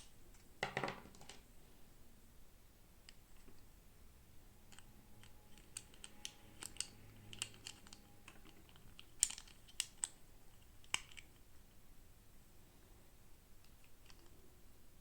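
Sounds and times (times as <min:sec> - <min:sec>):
plastic toy pieces clicking: 0:04.7 - 0:11.4.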